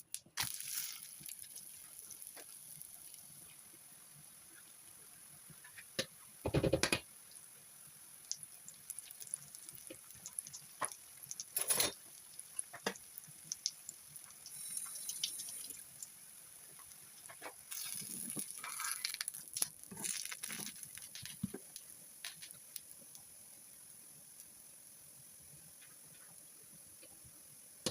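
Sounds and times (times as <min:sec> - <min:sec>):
small kitchen taps and clicks: 0:05.6 - 0:07.1, 0:12.6 - 0:13.0.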